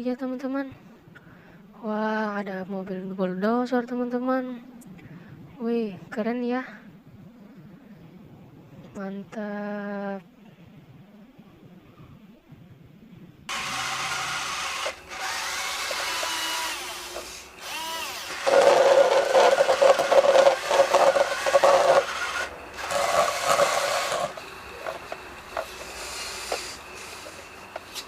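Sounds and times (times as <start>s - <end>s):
toy motor and gears whirring: 13.5s - 28.0s.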